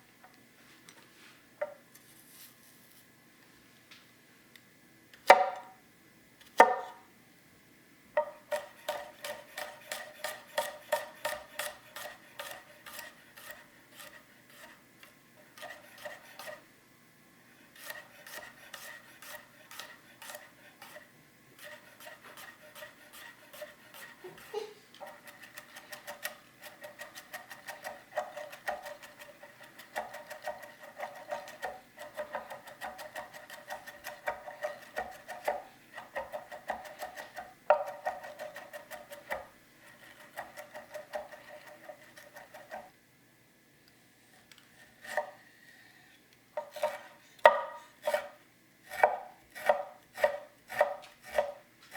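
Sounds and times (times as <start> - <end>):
knife chopping on cutting board: 5.3 - 5.7, 6.6 - 7.0, 8.2 - 14.7, 15.6 - 16.6, 17.8 - 21.0, 21.6 - 42.9, 46.6 - 51.6.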